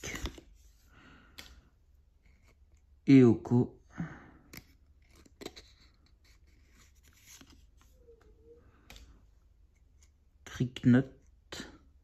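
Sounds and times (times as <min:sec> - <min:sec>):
trading cards sliding and clicking: 0:00.0 - 0:01.6.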